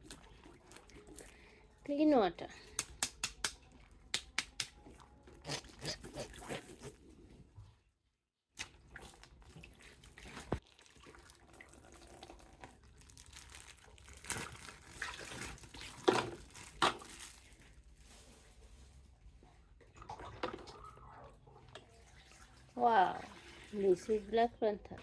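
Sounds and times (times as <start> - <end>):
water sloshing in a basin: 0.0 - 1.8, 8.6 - 13.0, 14.8 - 17.0, 19.7 - 25.0
water splashes: 21.9 - 24.4.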